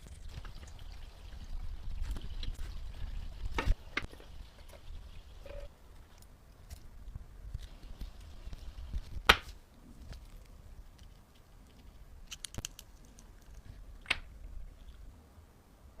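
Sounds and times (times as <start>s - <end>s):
small hard objects clicking: 10.4s - 14.2s.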